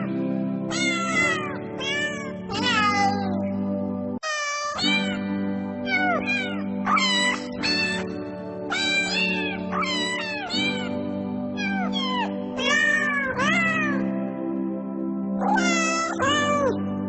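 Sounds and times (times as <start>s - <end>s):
background music with held notes: 0.0s - 4.2s, 4.8s - 17.0s
cat meowing: 0.7s - 3.4s, 4.2s - 5.2s, 5.8s - 8.1s, 8.7s - 11.0s, 11.6s - 14.1s, 15.4s - 16.8s.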